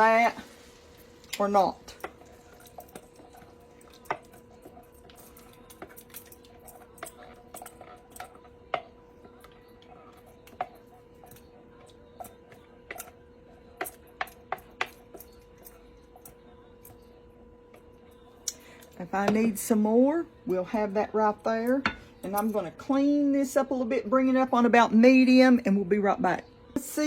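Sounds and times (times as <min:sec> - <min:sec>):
utensils and dishes clinking: 0:01.2 - 0:19.4.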